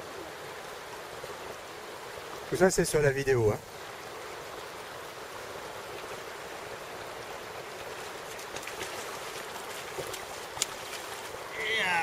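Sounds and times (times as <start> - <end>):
river water flowing: 0.0 - 12.0.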